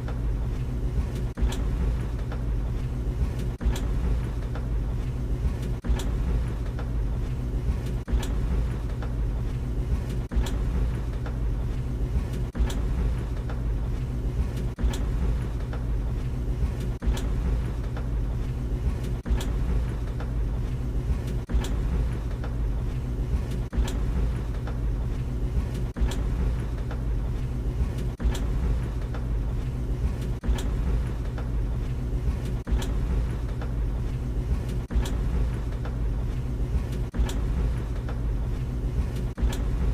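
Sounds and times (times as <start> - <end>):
tumble dryer humming: 0.0 - 39.9.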